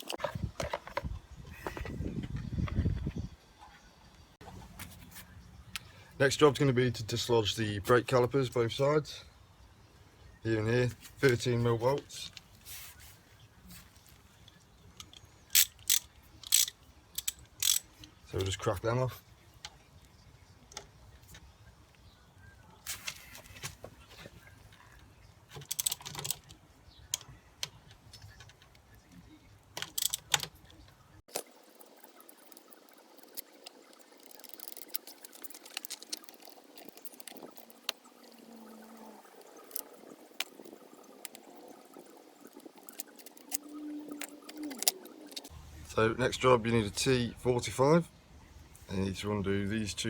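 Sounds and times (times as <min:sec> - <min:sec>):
socket wrench clicking: 0:15.0 - 0:17.9, 0:29.8 - 0:30.5, 0:31.8 - 0:38.0, 0:42.6 - 0:45.5
metal parts clinking: 0:15.0 - 0:18.6, 0:25.6 - 0:26.6, 0:29.8 - 0:30.6, 0:31.3 - 0:45.5.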